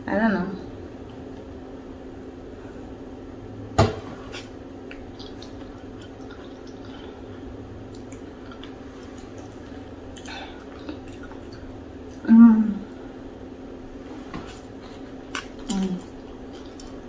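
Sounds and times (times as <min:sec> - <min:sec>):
steady low hum: 0:00.0 - 0:17.0
wet mouth eating sounds: 0:04.3 - 0:12.3, 0:14.4 - 0:17.0
lip smacks and clicks: 0:04.4 - 0:07.2, 0:07.9 - 0:12.2, 0:15.2 - 0:17.0.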